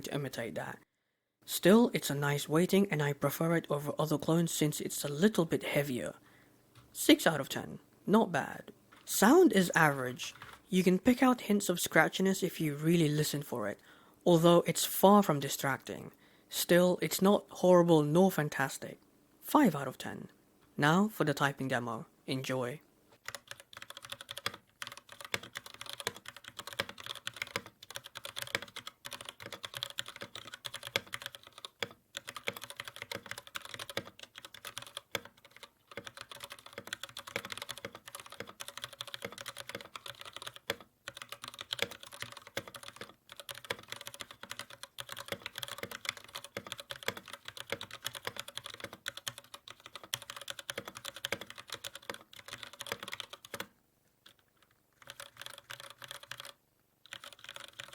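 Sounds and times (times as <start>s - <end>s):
fast mechanical keyboard typing: 23.2s - 57.9s.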